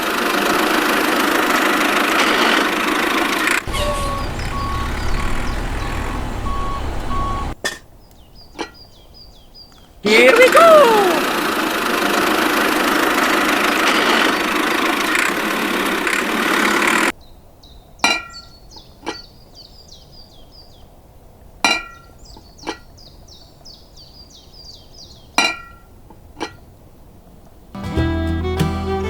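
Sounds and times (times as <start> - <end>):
high chirping: 2.6 - 7.6.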